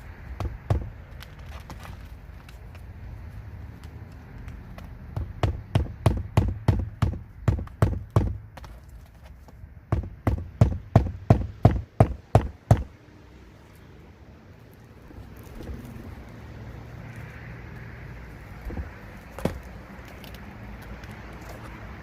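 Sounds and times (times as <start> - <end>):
hammer driving nails: 5.2 - 8.4.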